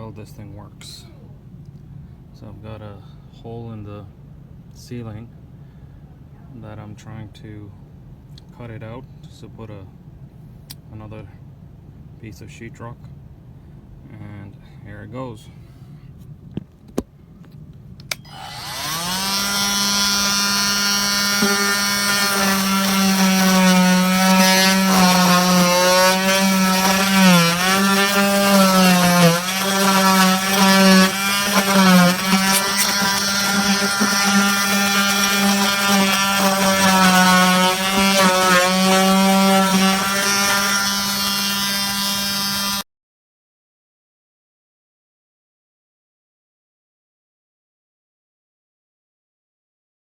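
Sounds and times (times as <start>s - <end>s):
oscillating multi-tool buzzing: 18.2s - 42.8s.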